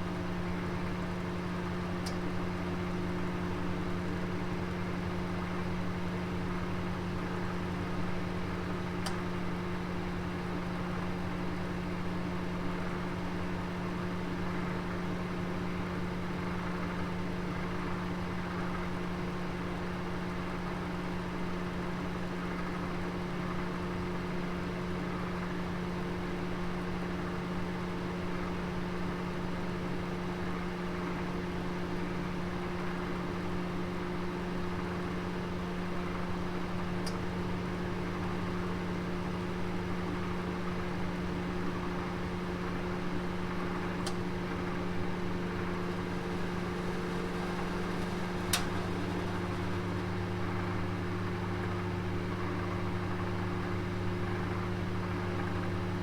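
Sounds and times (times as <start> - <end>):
oven humming: 32.8 - 56.0
faint tick: 46.8 - 49.7.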